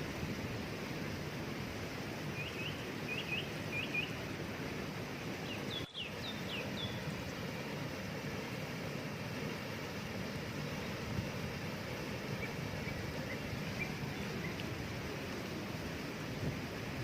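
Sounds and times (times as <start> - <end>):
waterfall rushing: 0.0 - 17.0
small bird chirping: 5.4 - 7.0, 12.4 - 14.7.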